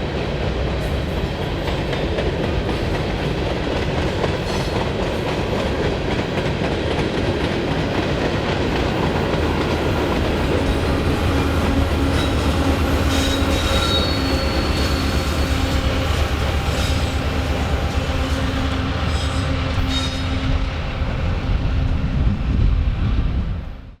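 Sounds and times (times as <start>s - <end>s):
train wheels rumbling on rails: 0.0s - 24.0s
high wheel squeals: 10.7s - 20.5s.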